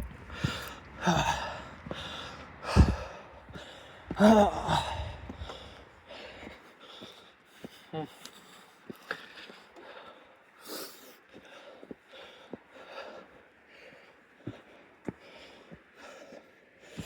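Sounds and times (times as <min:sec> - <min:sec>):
man panting: 0:00.0 - 0:17.0
man groaning exhale: 0:00.6 - 0:03.2, 0:04.2 - 0:05.6.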